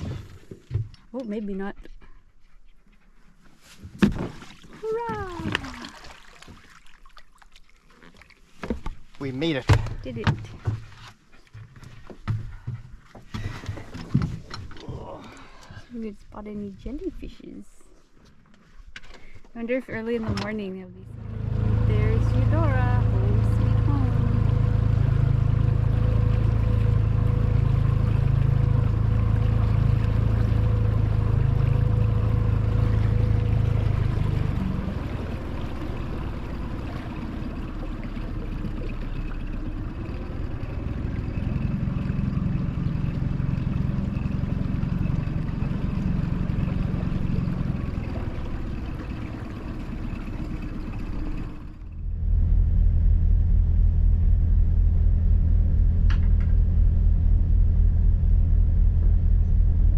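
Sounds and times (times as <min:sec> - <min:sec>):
low engine hum: 0:00.0 - 0:59.9
small boat motor running: 0:04.1 - 0:06.8, 0:19.1 - 0:59.9.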